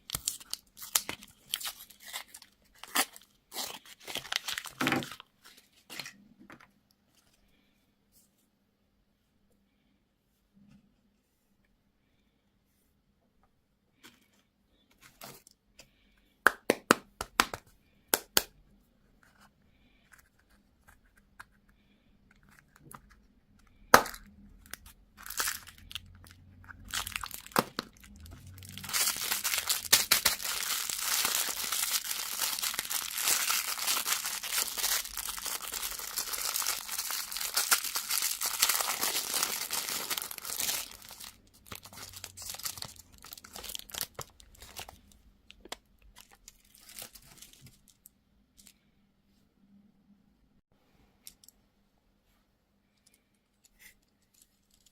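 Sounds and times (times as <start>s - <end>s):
wrapper crinkling and tearing: 0.0s - 6.1s, 24.6s - 48.0s.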